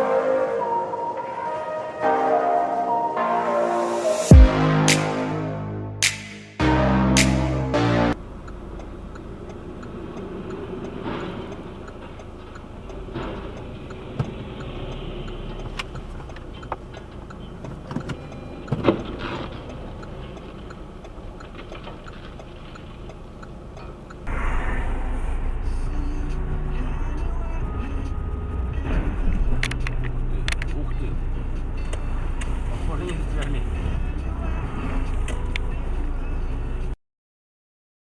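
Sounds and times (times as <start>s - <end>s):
low vehicle rumble: 19.1s - 37.0s
rush of noise: 24.3s - 29.7s.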